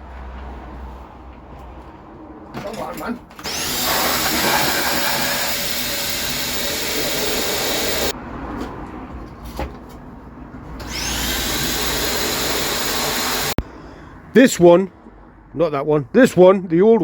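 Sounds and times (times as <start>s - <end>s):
vacuum cleaner blowing air: 3.5s - 8.1s.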